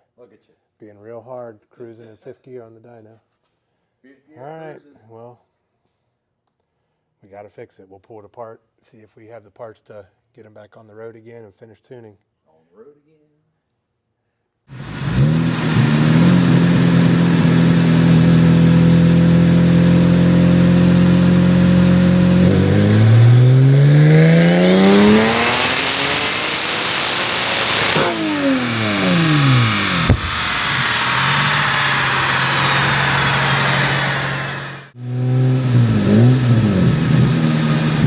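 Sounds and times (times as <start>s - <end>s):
rush of turbo noise: 14.7s - 38.0s
turbocharged engine revving: 14.7s - 38.0s
sharp snap: 27.6s - 32.1s.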